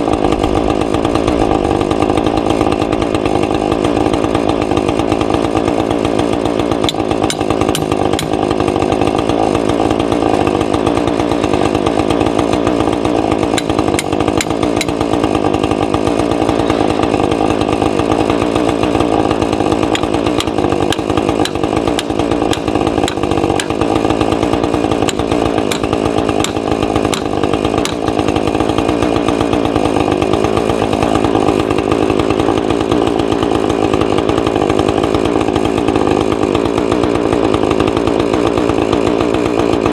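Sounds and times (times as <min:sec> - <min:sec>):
chainsaw milling a log: 0:00.0 - 0:39.9.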